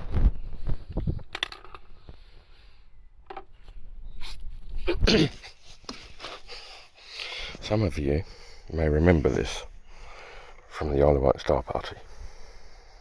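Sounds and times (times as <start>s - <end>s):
objects being handled: 0.0s - 6.6s.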